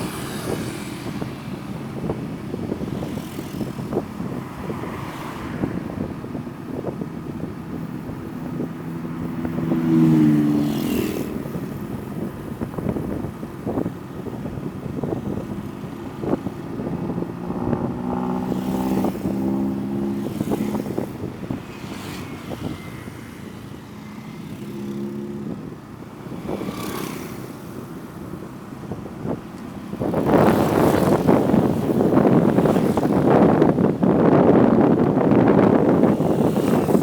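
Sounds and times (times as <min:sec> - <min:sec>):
motorcycle engine revving: 0:09.2 - 0:28.3, 0:29.2 - 0:37.0.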